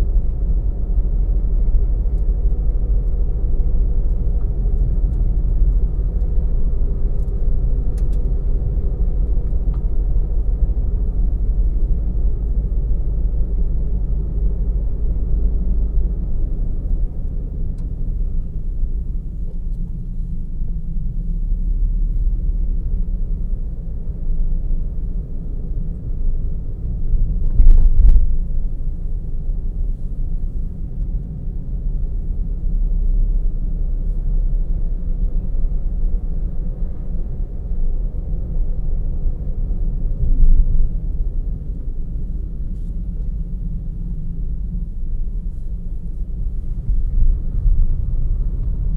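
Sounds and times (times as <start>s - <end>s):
car engine and tyres rumbling: 0.0s - 48.9s.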